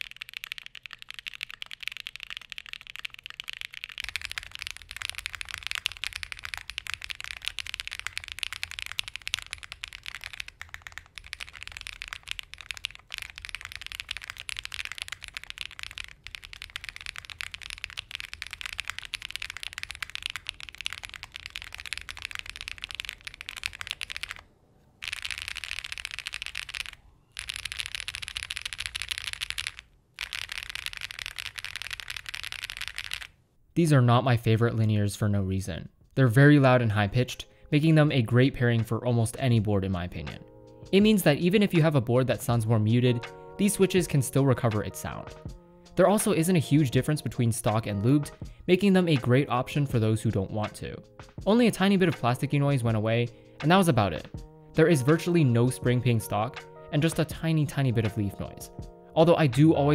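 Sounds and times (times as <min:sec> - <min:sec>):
fast typing on mechanical keyboard: 0:00.0 - 0:33.3.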